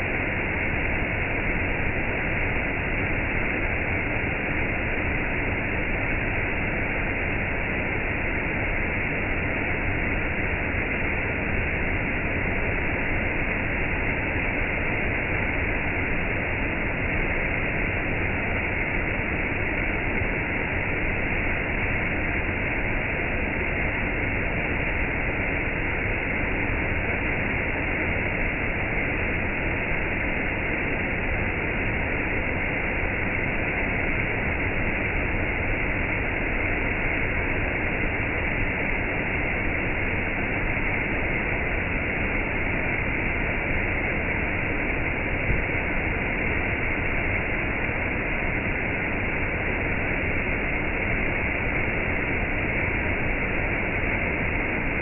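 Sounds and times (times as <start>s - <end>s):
waterfall: 25.4s - 55.0s.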